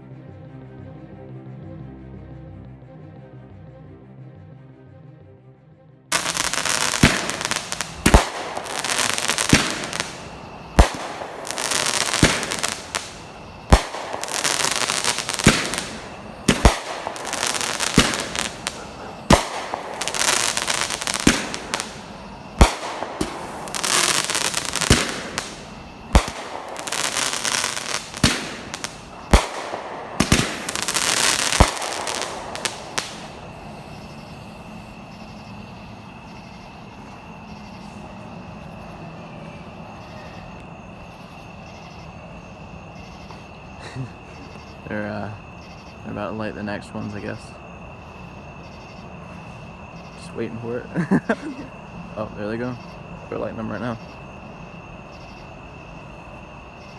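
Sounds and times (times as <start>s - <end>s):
fireworks banging and crackling: 6.1s - 34.9s.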